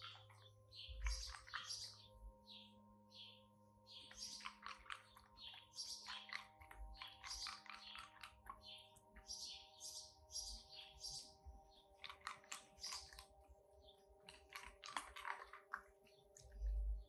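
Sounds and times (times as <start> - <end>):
teeth clicking on ice: 4.2 - 5.2, 6.0 - 8.6, 11.9 - 13.3, 14.2 - 16.9
dog crunching ice: 12.0 - 13.2, 14.3 - 16.0.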